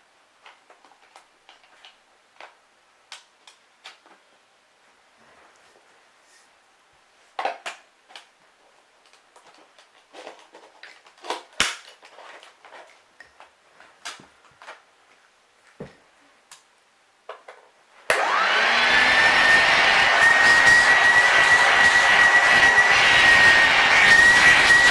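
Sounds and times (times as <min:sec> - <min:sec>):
vacuum cleaner motor whining: 0:18.1 - 0:24.9.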